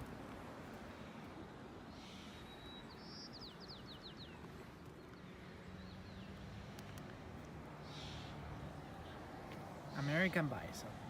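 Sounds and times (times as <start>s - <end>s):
songbird chirping: 1.9s - 7.1s.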